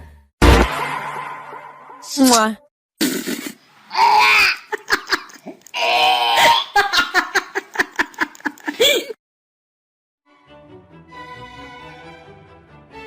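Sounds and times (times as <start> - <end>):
person giggling: 4.6 - 5.6, 6.4 - 9.2.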